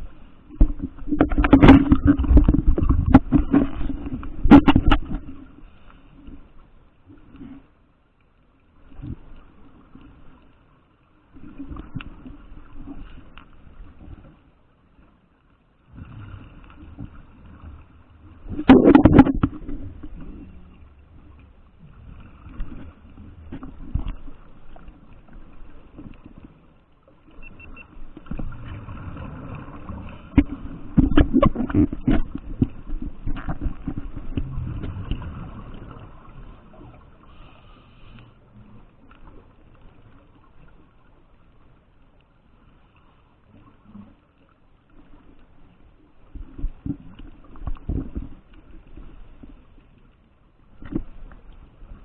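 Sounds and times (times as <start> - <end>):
diver's exhaled bubbles gurgling: 0.5 - 5.4, 15.9 - 24.9, 28.2 - 37.2.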